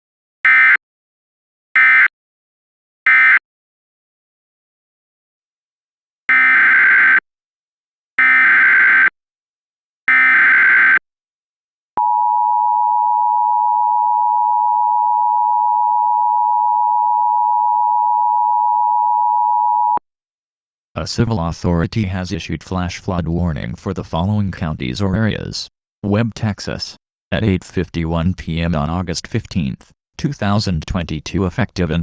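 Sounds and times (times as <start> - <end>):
harsh digital data buzzes: 6.3 - 7.2, 8.2 - 9.1, 10.1 - 11.0.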